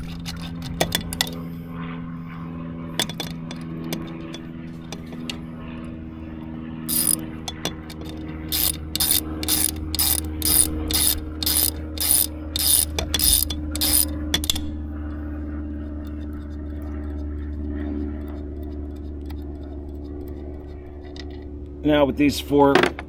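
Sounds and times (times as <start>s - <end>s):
socket ratchet clicking: 6.9s - 14.7s.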